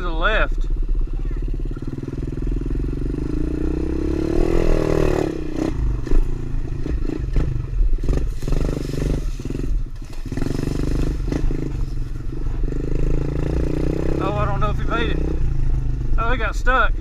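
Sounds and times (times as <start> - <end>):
pit bike engine revving: 0.7 - 16.4.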